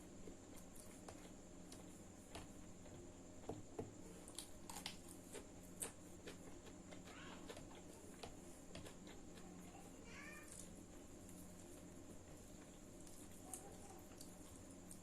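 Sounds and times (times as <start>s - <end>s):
steady low hum: 0.0s - 15.0s
chewing and mouth noises: 4.1s - 9.8s, 10.4s - 15.0s.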